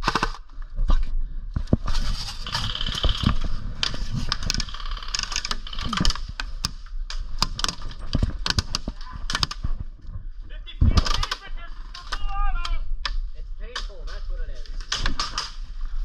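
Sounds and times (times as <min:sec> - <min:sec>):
airsoft guns firing: 0:10.8 - 0:14.0.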